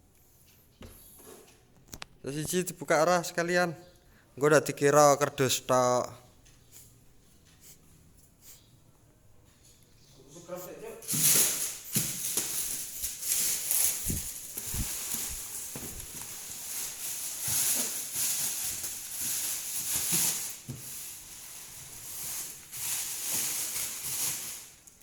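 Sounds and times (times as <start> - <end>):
packaging rustling and scraping: 11.0 - 25.0.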